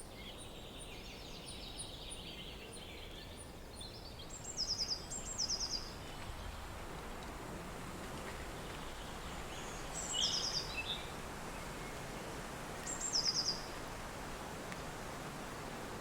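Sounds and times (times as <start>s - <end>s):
songbird singing: 0.0s - 6.7s, 8.3s - 13.8s
wind: 0.0s - 16.0s.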